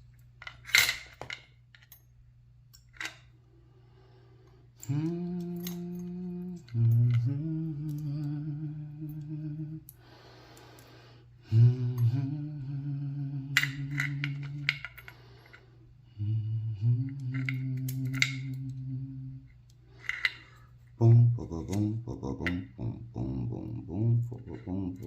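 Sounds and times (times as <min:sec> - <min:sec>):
breath: 0:03.6 - 0:04.8, 0:10.0 - 0:11.3, 0:15.0 - 0:16.2, 0:19.9 - 0:20.8
man humming: 0:04.8 - 0:10.0, 0:11.4 - 0:15.0, 0:16.0 - 0:19.6, 0:21.0 - 0:25.0.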